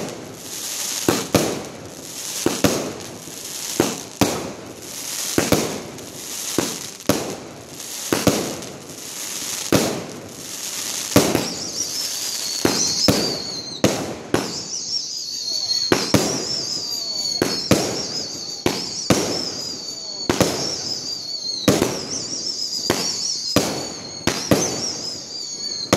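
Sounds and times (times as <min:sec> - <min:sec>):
fireworks bangs: 0:00.0 - 0:25.9
fireworks crackling: 0:00.0 - 0:25.9
wavering high whistle: 0:10.4 - 0:25.9.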